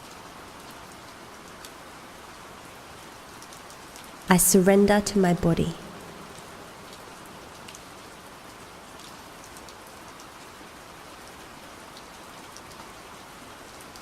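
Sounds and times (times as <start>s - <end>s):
gentle rain falling: 0.0s - 14.0s.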